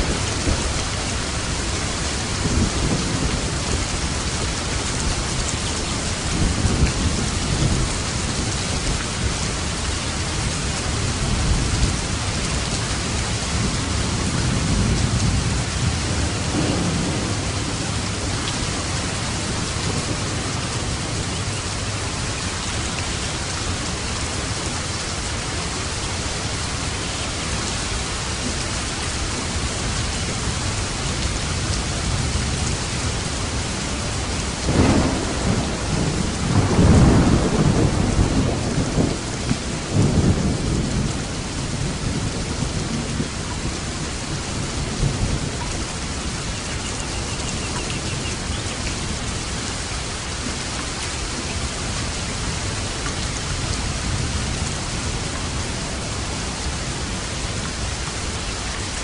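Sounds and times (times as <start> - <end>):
rolling thunder: 0.0 - 4.7, 10.8 - 22.1, 29.8 - 46.3
heavy rain: 0.0 - 59.0
sharp thunderclap: 14.5 - 18.9, 34.7 - 39.3.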